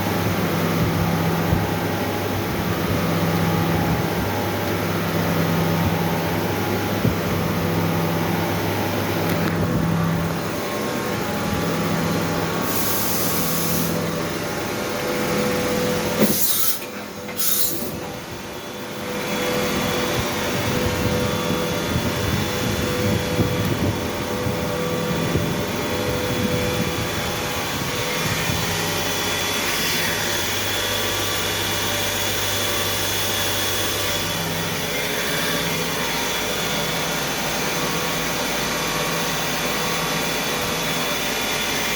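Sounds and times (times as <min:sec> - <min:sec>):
cnc machine humming: 0:00.0 - 0:41.9
short hissing bursts: 0:12.6 - 0:14.0.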